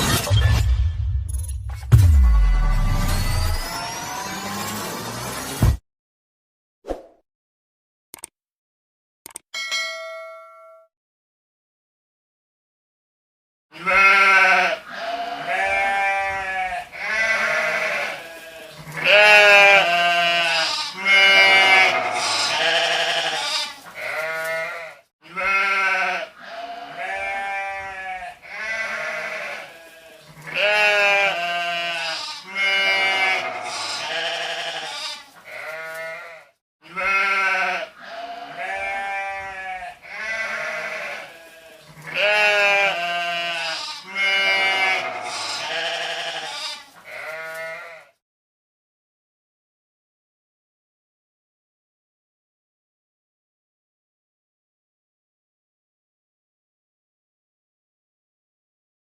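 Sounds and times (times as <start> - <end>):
sheep bleating: 13.7 - 48.2.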